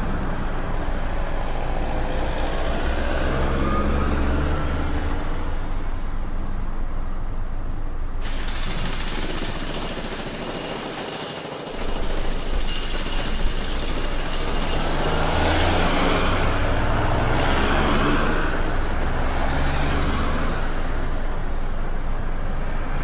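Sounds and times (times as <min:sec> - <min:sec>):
traffic engines running: 0:00.0 - 0:09.7, 0:12.0 - 0:23.0
jackhammer hammering: 0:08.2 - 0:20.0.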